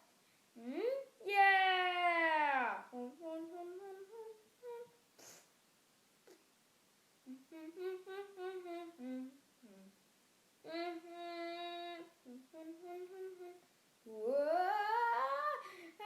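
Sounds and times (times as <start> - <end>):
person humming: 0.6 - 1.1, 2.6 - 5.4, 7.2 - 10.0, 10.6 - 16.0.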